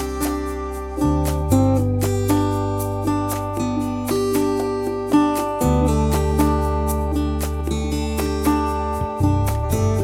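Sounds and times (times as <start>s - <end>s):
acoustic guitar strumming: 0.0s - 10.0s
steady bass line: 0.0s - 10.0s.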